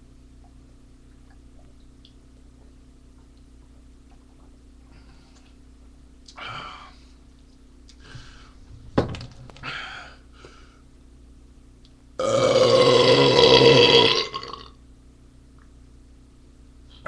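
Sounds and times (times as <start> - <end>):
man belching loudly: 12.2 - 14.8.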